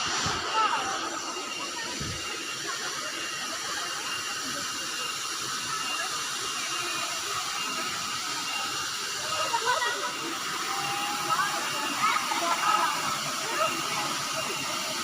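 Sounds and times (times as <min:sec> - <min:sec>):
thin high tone: 0:00.0 - 0:15.0
waterfall rushing: 0:06.5 - 0:15.0.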